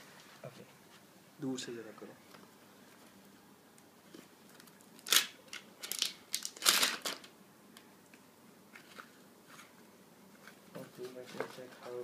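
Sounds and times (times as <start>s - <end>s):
packaging crinkling: 4.4s - 7.3s.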